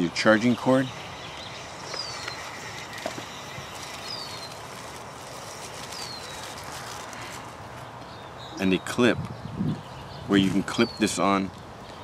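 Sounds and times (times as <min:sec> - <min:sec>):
background hiss: 0:00.0 - 0:08.8
bird whistling: 0:00.8 - 0:04.7, 0:05.8 - 0:06.6.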